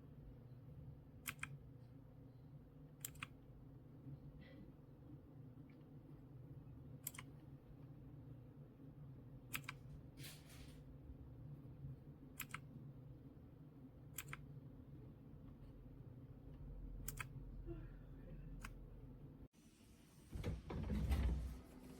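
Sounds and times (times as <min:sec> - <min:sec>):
faint low hum: 0:00.0 - 0:21.9
mechanical keyboard key presses: 0:07.0 - 0:07.3.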